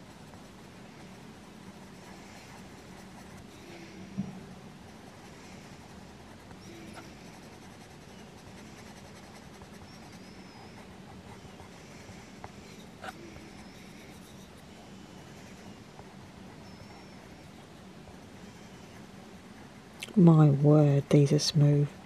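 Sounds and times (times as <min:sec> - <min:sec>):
pencil scratching on paper: 0:00.0 - 0:04.1, 0:04.8 - 0:17.6.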